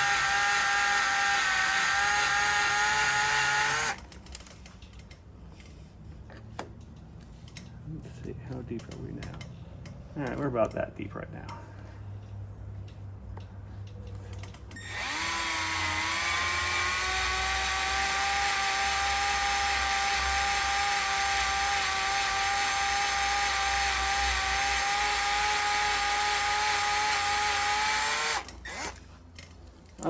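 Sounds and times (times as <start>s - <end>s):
power drill motor whine: 0.0s - 4.0s, 14.8s - 29.0s.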